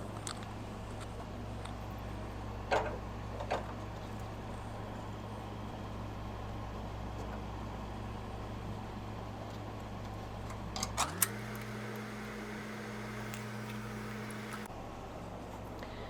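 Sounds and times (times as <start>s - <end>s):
sharp clicks: 11.0s - 14.7s
steady machine hum: 11.0s - 14.7s.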